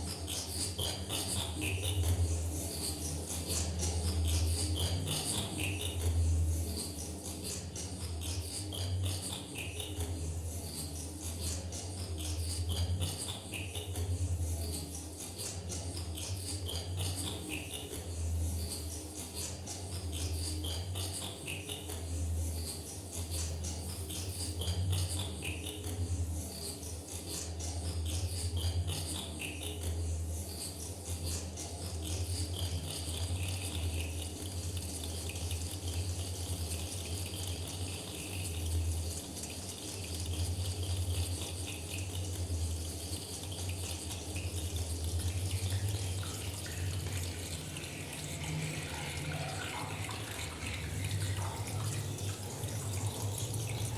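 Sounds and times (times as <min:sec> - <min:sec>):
low drone: 0:45.4 - 0:53.9.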